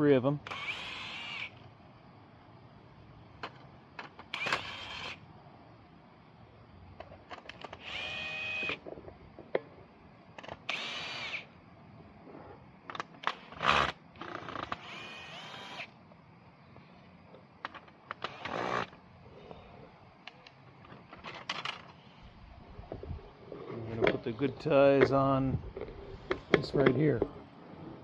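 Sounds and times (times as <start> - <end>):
power tool running: 0.5 - 1.5, 4.3 - 5.2, 7.8 - 8.8, 10.7 - 11.5, 13.6 - 15.9, 18.2 - 19.0.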